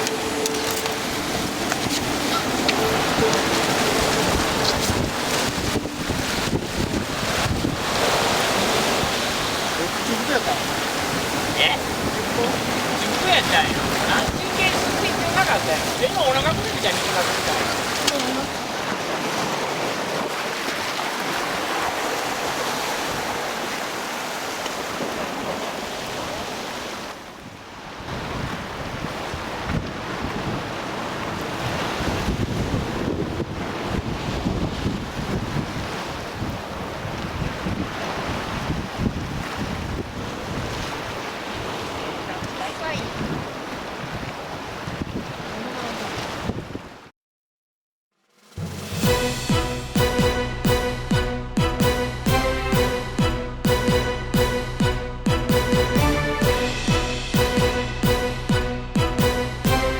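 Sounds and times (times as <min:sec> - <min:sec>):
wind buffeting microphone: 0:00.0 - 0:20.3, 0:27.9 - 0:47.0
sea surf on rocks: 0:00.0 - 0:47.1.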